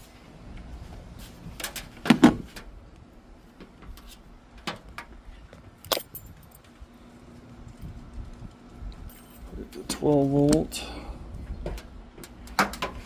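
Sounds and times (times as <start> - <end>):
low wind rumble: 0.0 - 13.0
handling knocks and clicks: 11.6 - 13.0.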